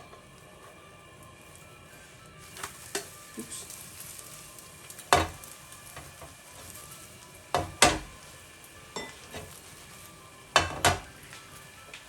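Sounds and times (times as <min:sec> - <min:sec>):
egg sizzling in a frying pan: 0:00.0 - 0:12.0
utensil clattering against pan: 0:05.1 - 0:05.4, 0:07.5 - 0:08.2, 0:10.6 - 0:11.1.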